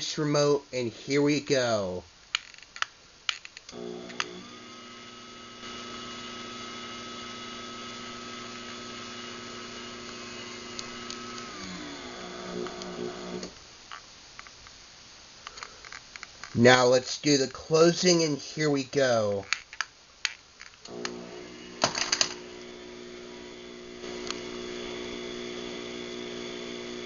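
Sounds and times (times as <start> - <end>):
garage door opener motor running: 3.7 - 13.6, 20.9 - 27.0.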